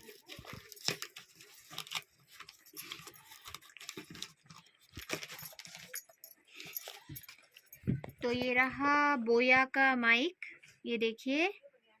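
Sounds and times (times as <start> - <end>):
packaging rustling and tearing: 0.0 - 7.6.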